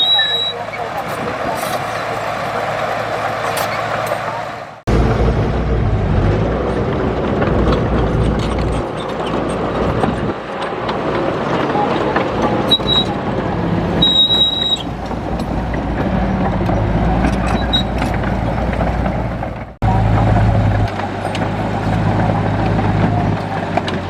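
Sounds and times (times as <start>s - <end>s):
short high-pitched squeals: 0.0s - 0.9s, 12.7s - 13.2s, 13.9s - 14.9s
heavy diesel engine running: 0.0s - 24.0s.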